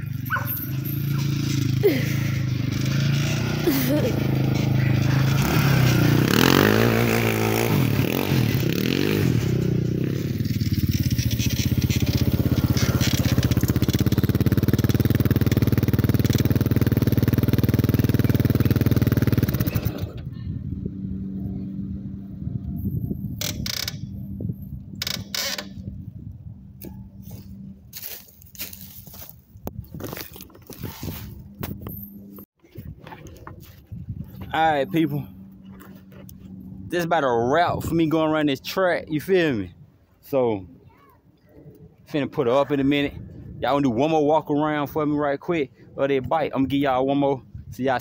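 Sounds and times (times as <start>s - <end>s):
quad engine revving: 0.0s - 22.5s.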